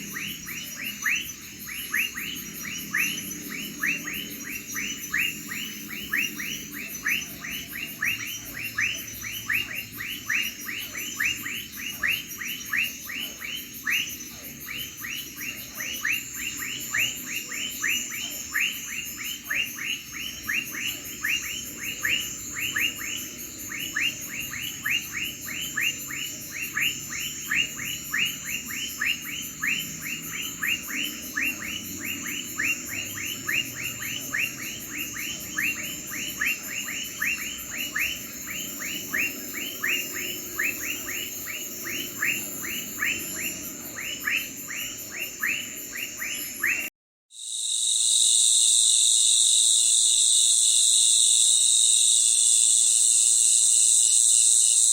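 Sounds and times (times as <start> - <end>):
high pulsing cricket trill: 0.0 - 54.9
short falling cricket chirps: 0.0 - 54.9
steady high cricket tone: 0.0 - 54.9.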